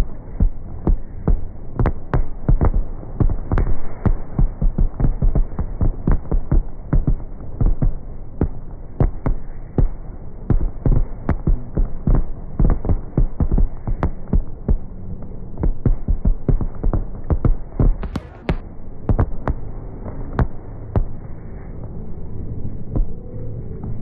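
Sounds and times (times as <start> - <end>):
continuous rumble: 0.0 - 24.0
fireworks booming: 15.6 - 19.7.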